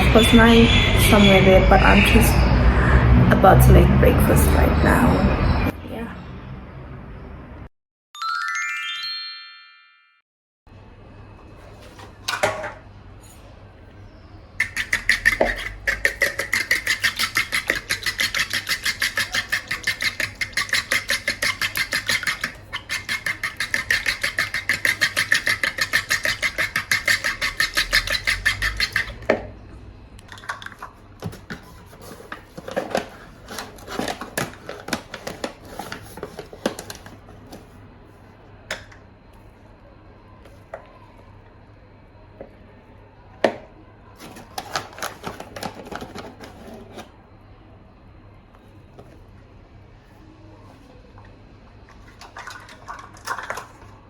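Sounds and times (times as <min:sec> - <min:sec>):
kitchen utensil striking rapidly: 0:14.6 - 0:29.3.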